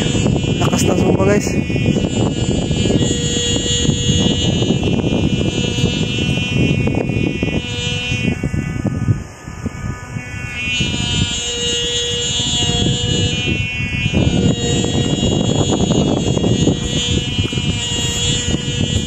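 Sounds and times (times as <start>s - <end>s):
kite hummer drone: 0.0s - 19.0s
wind noise rumbling: 0.0s - 19.0s.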